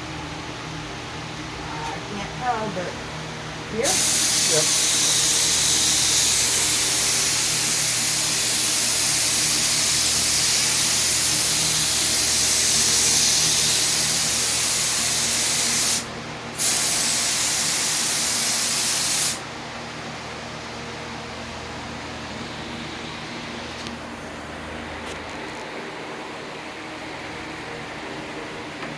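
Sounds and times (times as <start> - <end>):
paint sprayer hissing: 3.8 - 19.4.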